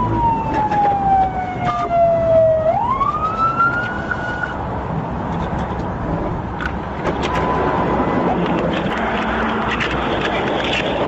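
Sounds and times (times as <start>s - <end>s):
police siren wailing: 0.0s - 4.6s
road and engine noise: 0.0s - 11.0s.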